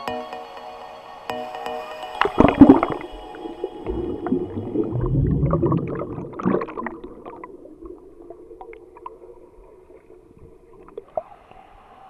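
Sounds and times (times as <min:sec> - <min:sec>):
water gurgling and splashing: 0:02.2 - 0:11.4
low rumble: 0:03.8 - 0:08.6.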